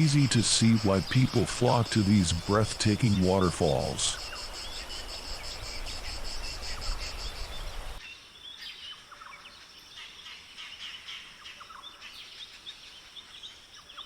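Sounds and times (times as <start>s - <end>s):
insects chirping in fast pulse: 0.0s - 8.0s.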